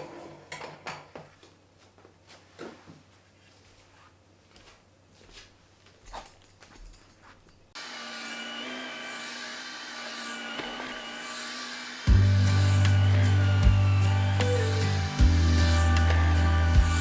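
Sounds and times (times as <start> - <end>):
small electric motor whining: 7.8 - 17.0.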